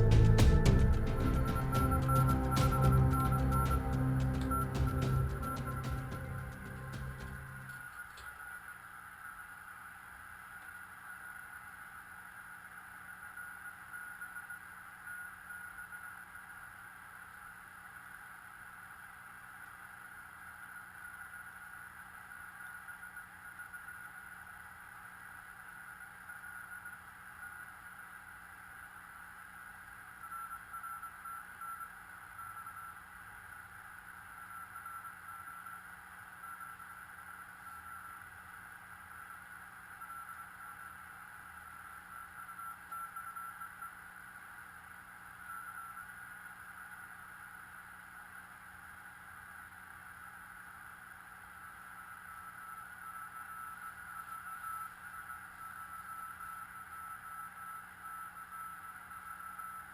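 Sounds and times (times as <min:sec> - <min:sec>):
faint morse code tones: 0:00.0 - 0:08.0, 0:30.1 - 0:33.2, 0:42.0 - 0:44.4
low hum: 0:00.0 - 0:08.0.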